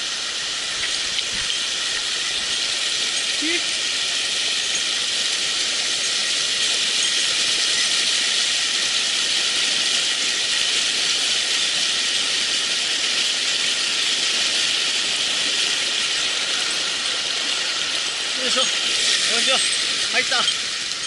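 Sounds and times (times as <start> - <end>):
water rushing over rocks: 0.0 - 21.0.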